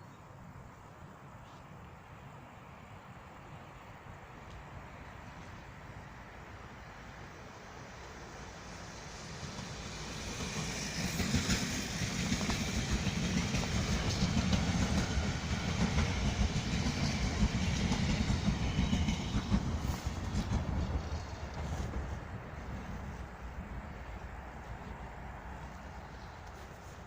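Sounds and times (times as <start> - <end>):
train wheels clattering over rail joints: 9.3 - 23.3.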